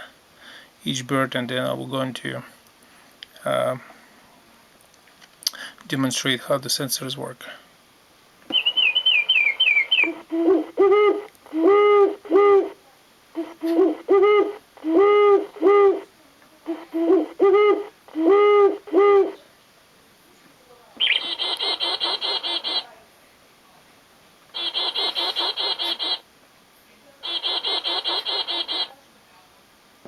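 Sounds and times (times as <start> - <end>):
low owl-like hoots: 8.5 - 19.5, 21.0 - 22.9, 24.5 - 26.2, 27.2 - 29.0
fast high trill: 24.6 - 26.2.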